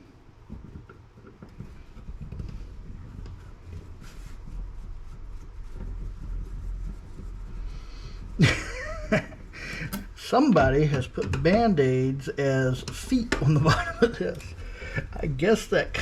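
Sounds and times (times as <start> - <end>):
screwdriver clicking and scraping metal: 9.8 - 11.6.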